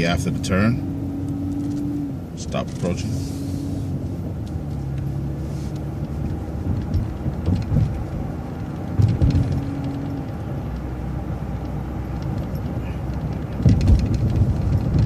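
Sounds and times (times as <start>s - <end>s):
bus engine humming: 0.0s - 15.0s
low thumps: 5.9s - 10.1s.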